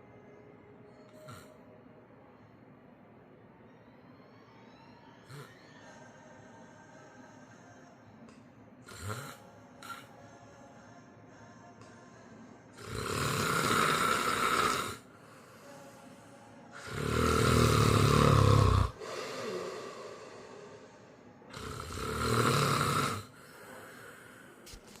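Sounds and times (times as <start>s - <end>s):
person snoring: 1.1s - 1.6s, 5.2s - 6.0s, 8.8s - 10.2s, 12.8s - 24.9s.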